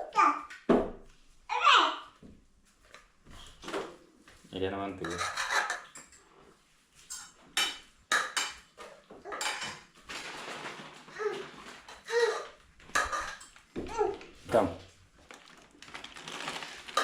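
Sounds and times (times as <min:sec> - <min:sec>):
dishes and cutlery clinking: 0:05.0 - 0:06.3, 0:07.0 - 0:10.0, 0:11.9 - 0:13.9.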